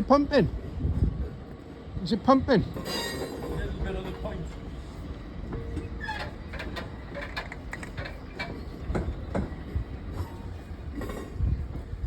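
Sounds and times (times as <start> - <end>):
freight train rumbling on rails: 0.0 - 12.0
wheel and coupling clanks: 2.7 - 4.6, 5.5 - 11.9.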